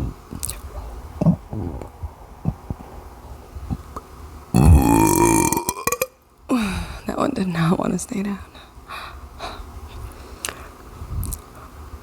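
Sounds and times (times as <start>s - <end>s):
loud long burp: 4.5s - 6.2s.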